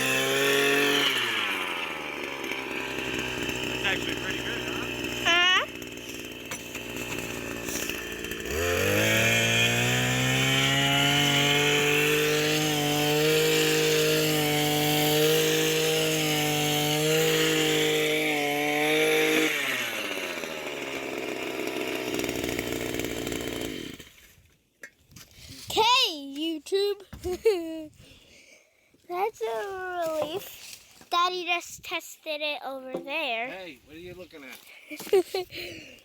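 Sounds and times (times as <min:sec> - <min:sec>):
post-hole auger engine revving: 0:00.0 - 0:24.2.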